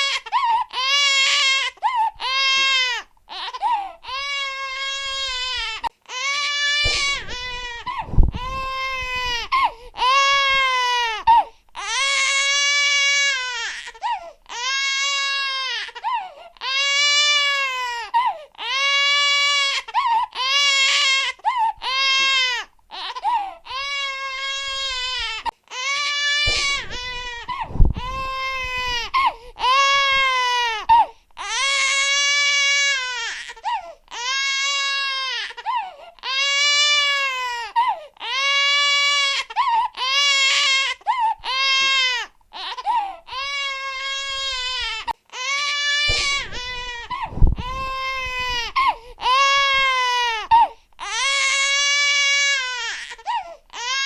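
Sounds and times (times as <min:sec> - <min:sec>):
baby crying: 0:00.0 - 0:54.0
baby gasping breaths: 0:03.5 - 0:04.0, 0:06.8 - 0:10.2, 0:26.5 - 0:29.7, 0:46.1 - 0:49.3
low thuds: 0:06.8 - 0:10.7, 0:26.5 - 0:30.3, 0:46.1 - 0:49.8.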